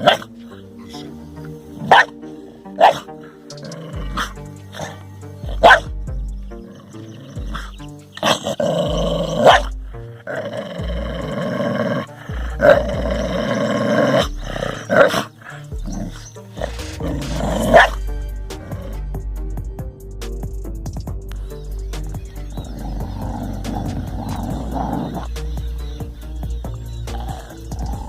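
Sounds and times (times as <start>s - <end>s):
background music: 0.0s - 28.0s
animal growling: 1.8s - 5.9s, 6.6s - 18.0s, 22.4s - 28.0s.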